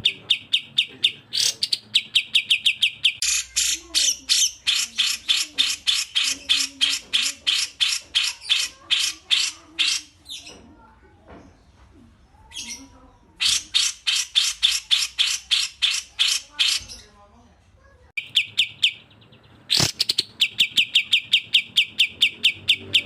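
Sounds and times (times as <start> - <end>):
songbird harsh repeated notes: 0.0 - 10.2, 13.4 - 16.9, 18.2 - 23.0.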